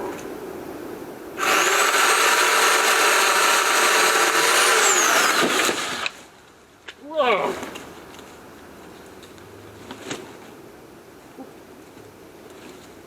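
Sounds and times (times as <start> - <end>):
pole chainsaw running: 1.4 - 6.2.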